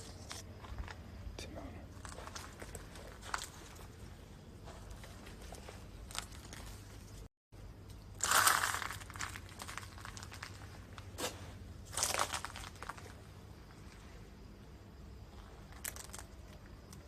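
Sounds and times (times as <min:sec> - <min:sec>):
crunching rustling noises: 0:00.0 - 0:14.3, 0:15.3 - 0:17.0.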